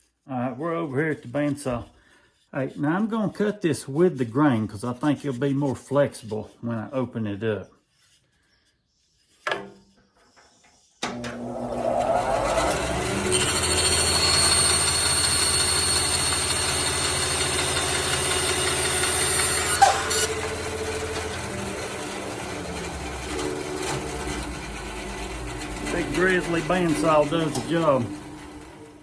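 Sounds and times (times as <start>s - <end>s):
bandsaw blade cutting wood: 11.1s - 29.0s
bandsaw motor running: 11.1s - 29.0s.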